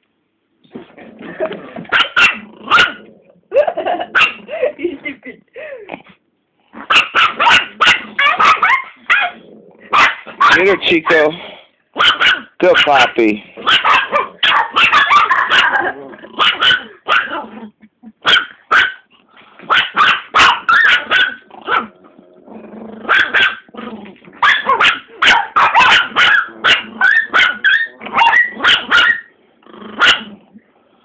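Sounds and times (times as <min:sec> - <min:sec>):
dogs barking excitedly: 0:01.8 - 0:03.1, 0:03.7 - 0:04.7, 0:06.8 - 0:11.3, 0:11.9 - 0:17.5, 0:18.2 - 0:22.2, 0:23.0 - 0:30.4.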